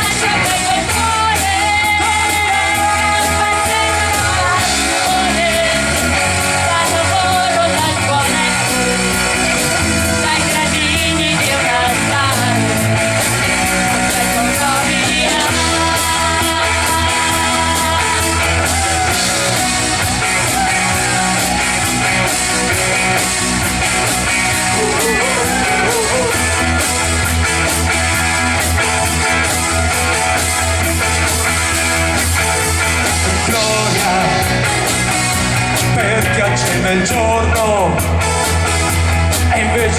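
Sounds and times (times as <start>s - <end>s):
rock music with singing: 0.0s - 39.9s.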